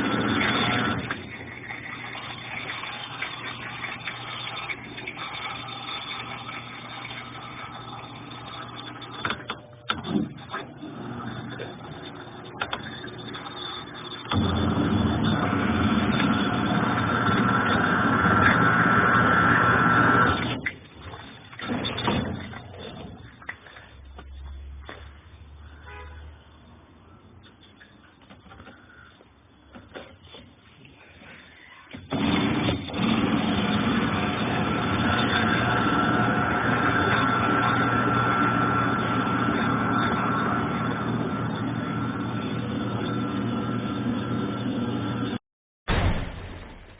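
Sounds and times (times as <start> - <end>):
washing machine motor humming: 0.0 - 25.1, 27.4 - 45.4.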